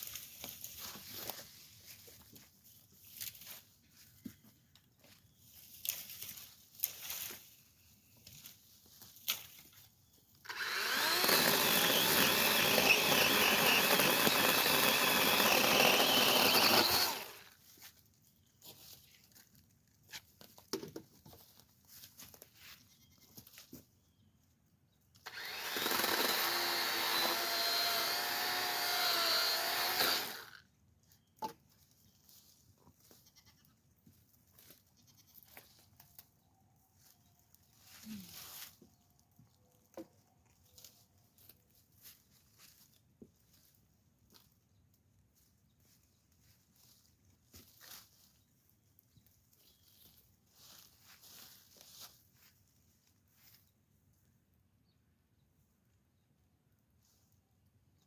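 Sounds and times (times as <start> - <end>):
power tool running: 10.4 - 17.5, 25.2 - 30.6.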